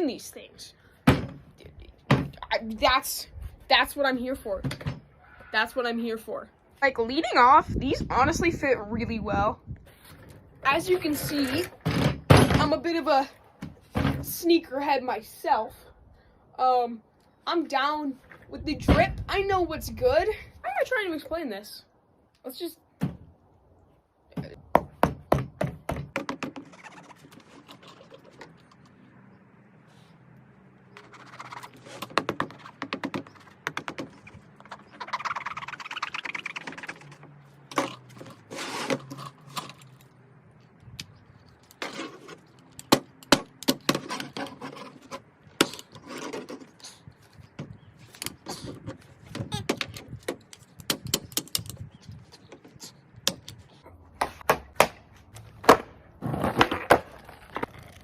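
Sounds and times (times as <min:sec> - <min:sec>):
scratchy rasping: 0:26.5 - 0:29.0, 0:31.0 - 0:40.0.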